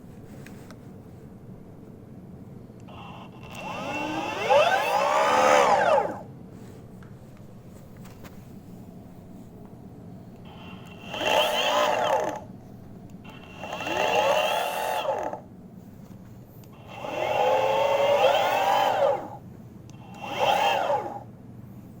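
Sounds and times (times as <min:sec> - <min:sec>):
electric motor whine: 0:02.9 - 0:06.3, 0:10.5 - 0:12.5, 0:13.3 - 0:15.4, 0:16.8 - 0:19.4, 0:20.0 - 0:21.3.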